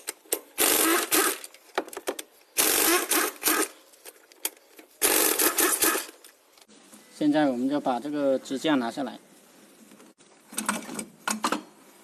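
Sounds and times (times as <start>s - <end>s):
power wrench rattling: 0.0s - 3.7s, 5.0s - 6.2s.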